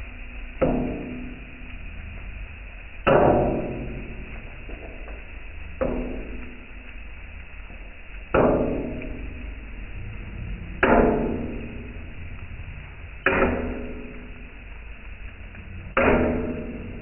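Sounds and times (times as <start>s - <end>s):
metal blades clanging on griddle: 16.0s - 17.0s.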